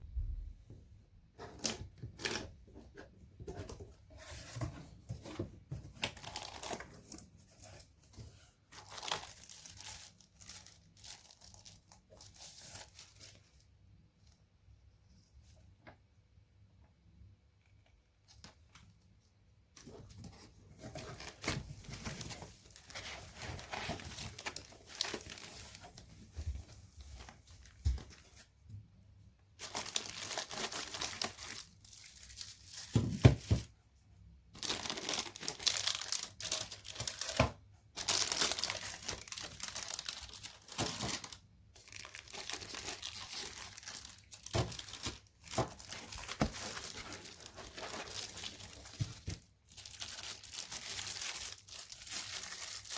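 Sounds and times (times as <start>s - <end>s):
packaging crinkling and tearing: 5.9s - 7.7s, 8.7s - 13.6s, 20.8s - 26.0s, 29.6s - 33.5s, 34.6s - 52.9s.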